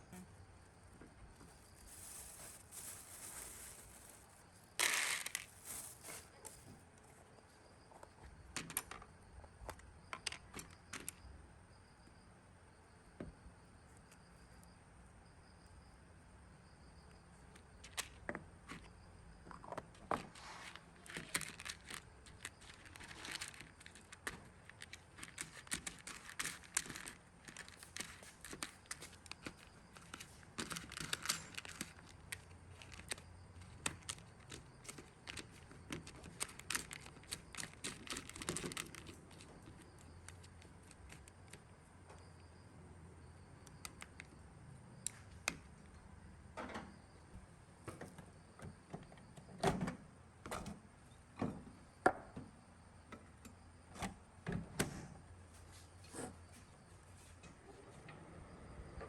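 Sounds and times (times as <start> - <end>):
hands crinkling and rustling: 1.4 - 6.8, 20.3 - 41.7.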